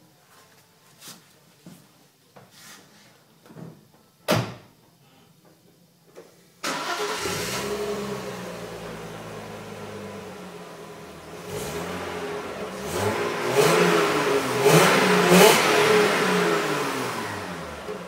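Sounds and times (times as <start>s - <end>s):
car engine starting and idling: 6.6s - 18.0s.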